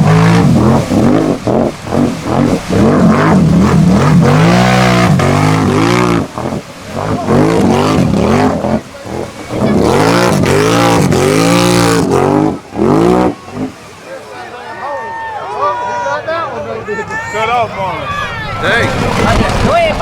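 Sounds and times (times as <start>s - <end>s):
off-road vehicle engine revving: 0.0s - 14.0s.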